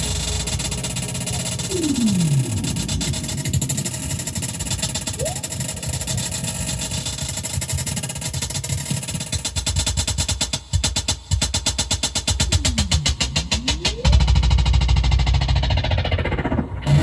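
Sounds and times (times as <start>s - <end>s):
distorted synthesizer drone: 0.0s - 7.2s, 12.3s - 17.0s
fast synth pulsing: 0.0s - 7.4s, 12.1s - 17.0s
rising synth blip: 1.3s - 6.2s, 12.3s - 15.4s.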